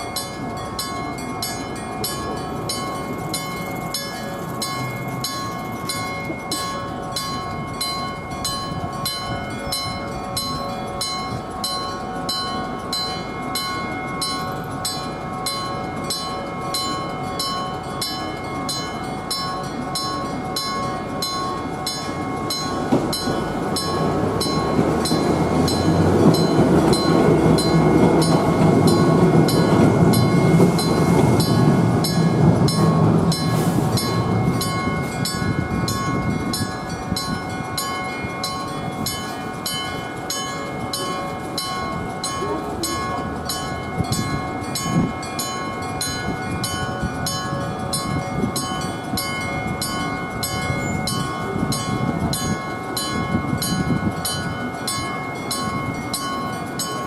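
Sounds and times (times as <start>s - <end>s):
electric crossing bell: 0.0s - 57.0s
train rumbling: 0.0s - 57.0s.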